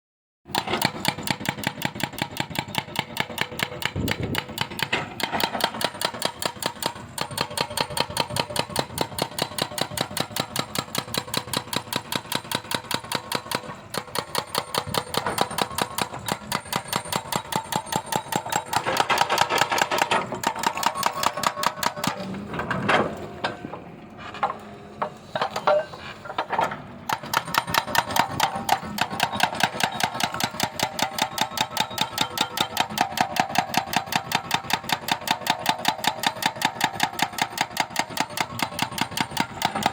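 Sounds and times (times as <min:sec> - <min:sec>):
excavator mechanical knocking: 0:00.5 - 0:23.9, 0:25.0 - 0:39.9.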